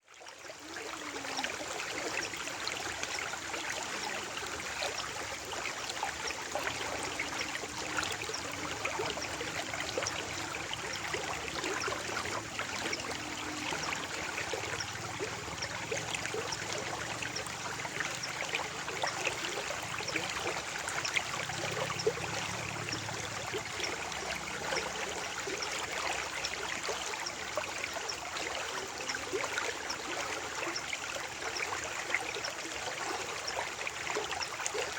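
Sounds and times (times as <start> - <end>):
small water splashes and drips: 0.0 - 34.9
stream of water flowing: 0.0 - 34.9.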